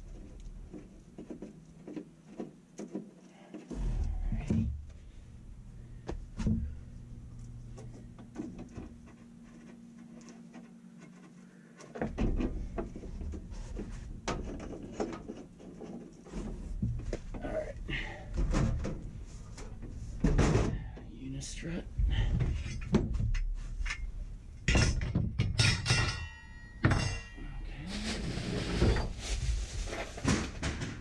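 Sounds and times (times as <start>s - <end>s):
steady low hum: 0.0s - 31.0s
hardware knocking and clattering: 18.0s - 21.0s, 22.0s - 27.5s.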